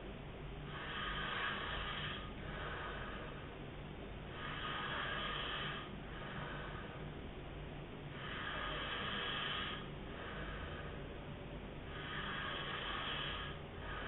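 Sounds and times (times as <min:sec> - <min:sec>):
man snoring: 0:00.7 - 0:03.4, 0:04.3 - 0:07.0, 0:08.1 - 0:11.0, 0:11.9 - 0:14.0.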